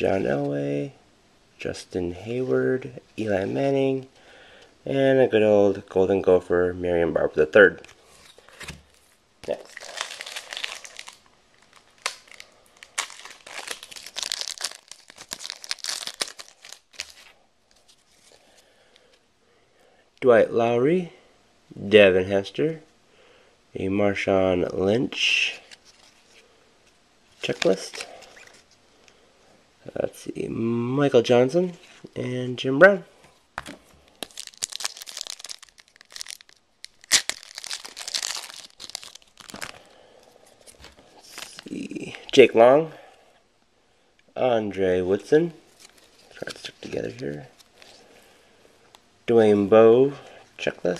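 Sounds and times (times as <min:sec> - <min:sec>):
wrapper crinkling and tearing: 0:09.4 - 0:18.4, 0:34.2 - 0:40.0, 0:40.6 - 0:42.4, 0:45.7 - 0:48.0.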